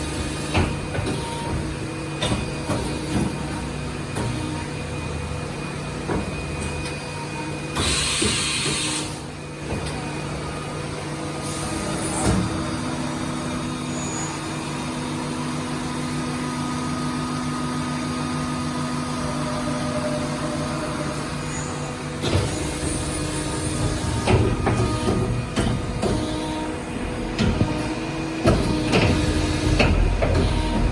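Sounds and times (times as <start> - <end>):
milling machine hum: 0.0 - 30.9
air hiss: 7.8 - 9.2.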